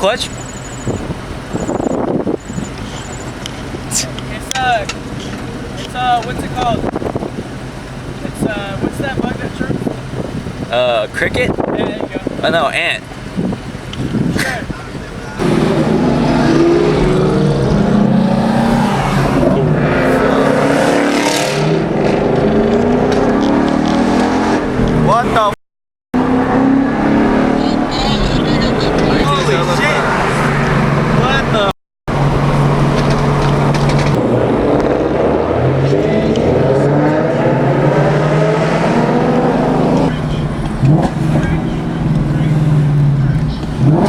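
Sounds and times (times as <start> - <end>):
car engine accelerating hard: 13.2 - 25.6, 26.2 - 44.0.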